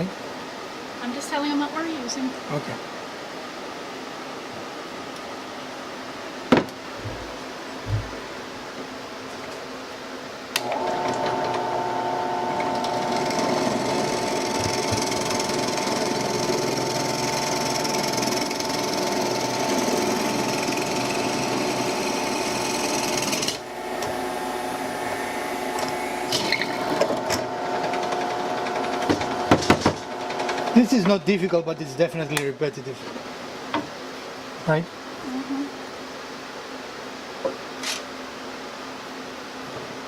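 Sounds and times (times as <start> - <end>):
knocks: 6.5 - 8.3
electric drill whining: 10.6 - 30.9.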